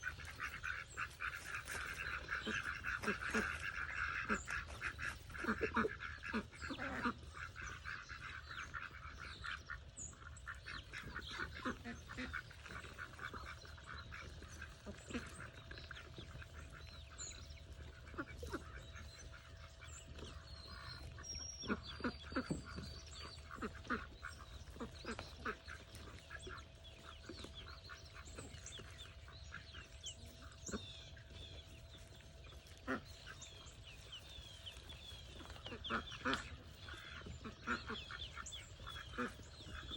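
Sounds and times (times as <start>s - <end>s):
birdlike calls: 0.0s - 39.9s.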